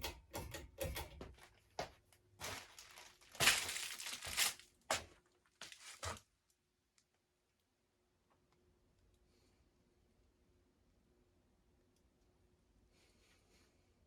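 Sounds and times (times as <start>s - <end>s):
rustling and crinkling handling noise: 1.4s - 6.6s
faint steady hum: 6.4s - 14.0s.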